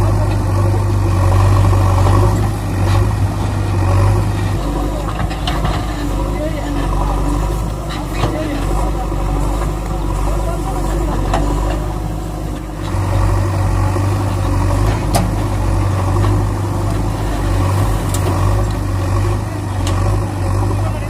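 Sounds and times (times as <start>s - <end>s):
vehicle engine running: 0.0s - 21.0s.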